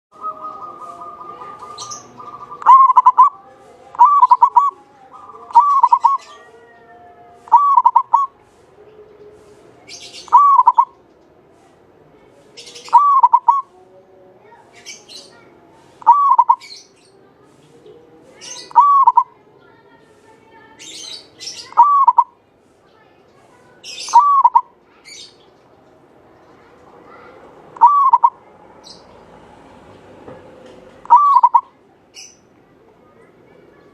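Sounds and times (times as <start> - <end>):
dove cooing: 0.2 - 6.7, 7.3 - 8.4, 10.3 - 11.0, 12.9 - 13.8, 16.1 - 16.7, 18.7 - 19.4, 21.7 - 22.4, 24.1 - 24.7, 27.8 - 28.4, 31.0 - 31.7.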